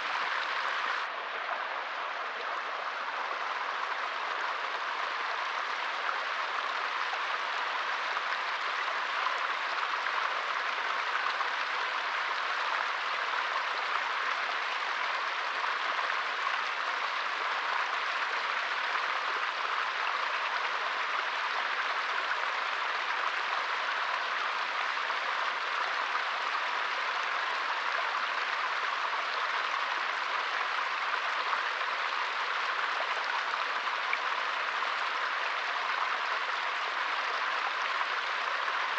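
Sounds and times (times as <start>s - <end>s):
stream flowing over stones: 0.0s - 38.9s.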